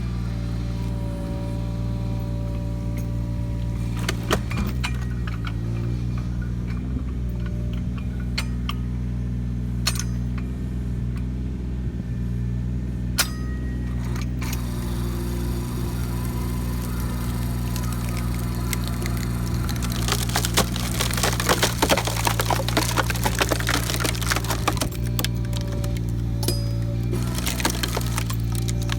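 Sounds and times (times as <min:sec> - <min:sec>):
diesel engine running: 0:00.0 - 0:28.9
wood crackling and splintering: 0:03.0 - 0:06.4, 0:14.1 - 0:28.9.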